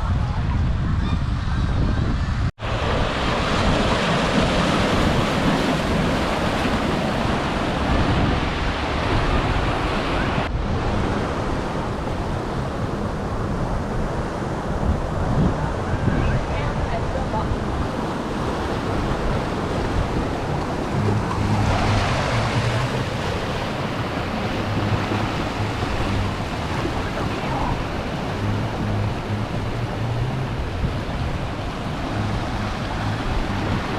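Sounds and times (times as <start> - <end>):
wind rushing over microphone: 0.0 - 33.9
surf washing in: 2.6 - 33.9
low hum: 19.4 - 33.9.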